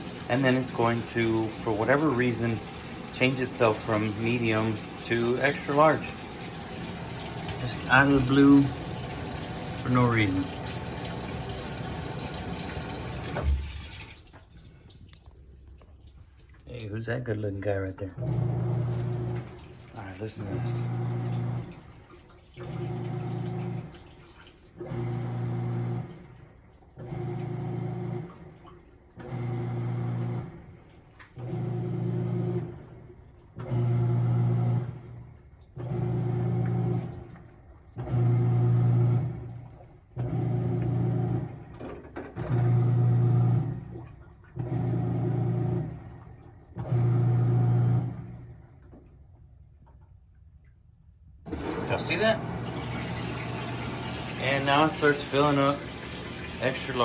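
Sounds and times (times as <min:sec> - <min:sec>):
water sloshing: 0:00.0 - 0:24.8, 0:51.5 - 0:57.0
washing machine motor humming: 0:00.0 - 0:49.0, 0:51.5 - 0:57.0.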